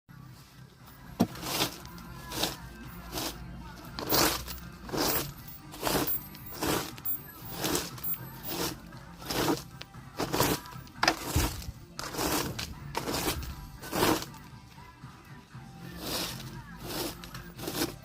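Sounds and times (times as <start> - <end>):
faint music: 0.1 - 18.0
leaves being swept by hand: 10.2 - 14.3, 15.9 - 18.0.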